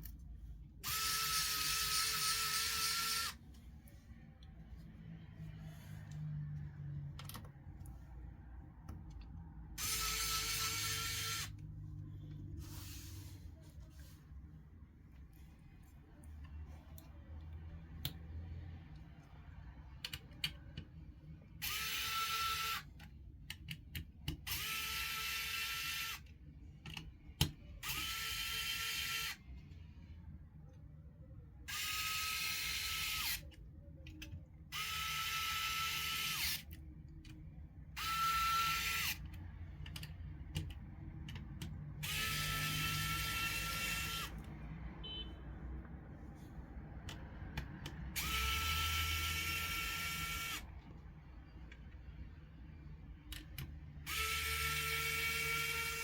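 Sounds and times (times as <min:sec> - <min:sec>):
electric screwdriver whine: 0:00.8 - 0:03.4, 0:09.8 - 0:11.5, 0:42.0 - 0:44.4, 0:54.1 - 0:56.0.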